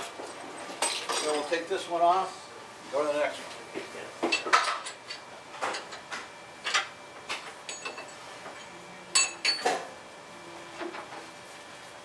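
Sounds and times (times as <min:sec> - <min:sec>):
metallic clinks and knocks: 0:07.7 - 0:08.2.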